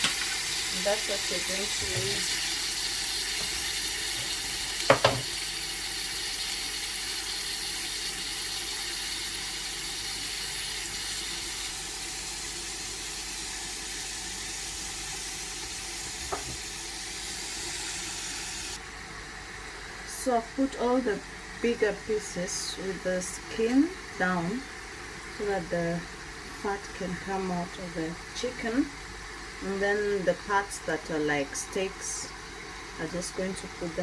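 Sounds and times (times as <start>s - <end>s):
chicken sizzling in fat: 0.0s - 20.1s.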